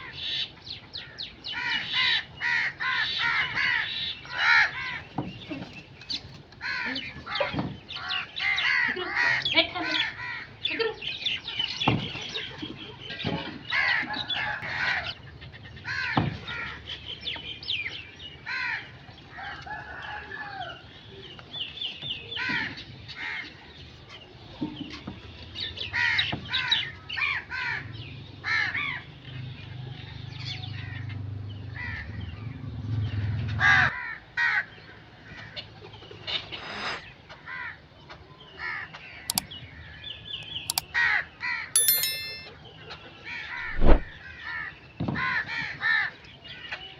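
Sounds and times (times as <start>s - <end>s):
chorus of bird calls: 0.0s - 32.4s.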